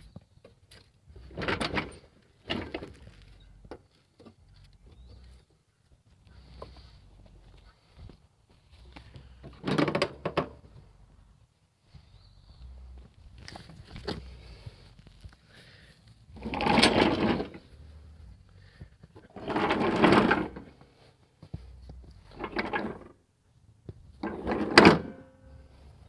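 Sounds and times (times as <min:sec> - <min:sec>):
metal mower deck scraping: 0:01.2 - 0:03.2, 0:09.4 - 0:10.6, 0:16.4 - 0:17.8, 0:19.2 - 0:20.9, 0:22.2 - 0:23.2, 0:24.1 - 0:25.8.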